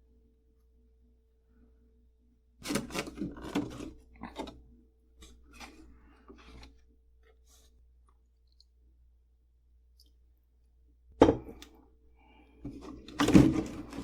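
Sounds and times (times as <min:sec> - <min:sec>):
faint steady hum: 0:00.0 - 0:14.0
rustling scraping handling: 0:02.6 - 0:04.6, 0:05.2 - 0:07.7, 0:12.7 - 0:14.0.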